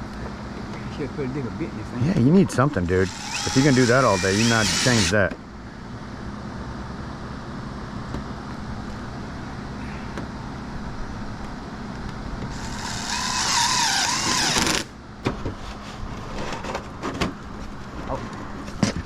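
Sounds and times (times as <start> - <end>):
steady low hum: 0.0 - 18.8
power tool whining: 2.9 - 5.3, 12.5 - 14.9.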